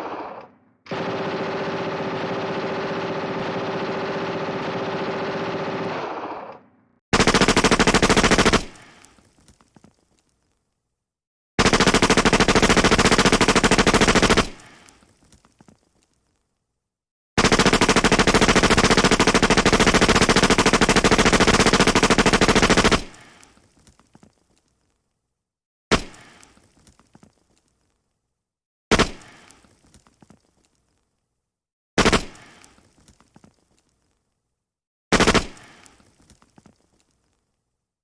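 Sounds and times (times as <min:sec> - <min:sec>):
submachine gun automatic fire: 0:00.0 - 0:08.9, 0:11.6 - 0:14.6, 0:17.4 - 0:23.2, 0:35.1 - 0:35.6.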